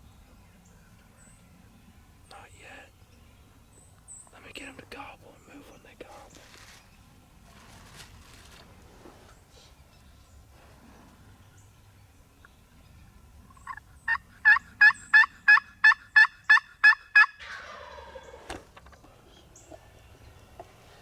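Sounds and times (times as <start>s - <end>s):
turkey yelping: 13.5s - 18.2s.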